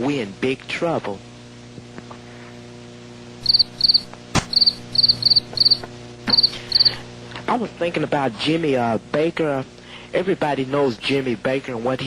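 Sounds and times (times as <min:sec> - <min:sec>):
sharp click: 0:03.4 - 0:06.6
crickets chirping: 0:03.4 - 0:07.1.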